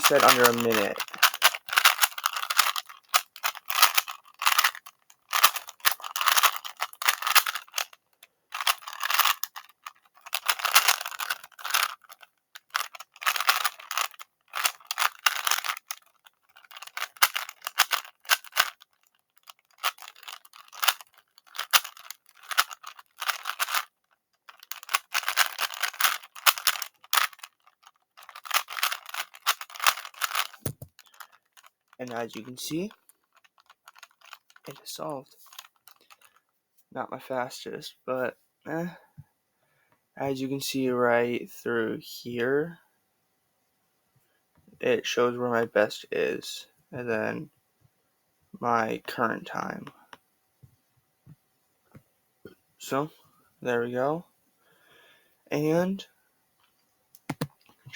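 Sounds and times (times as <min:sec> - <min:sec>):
puzzle cube clicking turns: 0:00.0 - 0:23.9, 0:24.5 - 0:31.6, 0:57.2 - 0:57.9.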